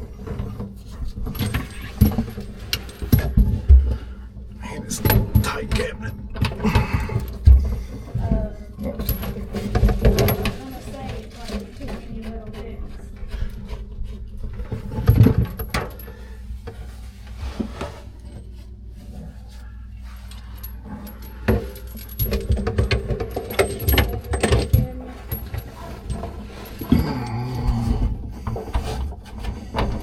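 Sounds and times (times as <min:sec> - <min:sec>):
metal plumbing tools clinking: 0:01.2 - 0:04.0, 0:04.6 - 0:12.6, 0:20.1 - 0:30.0.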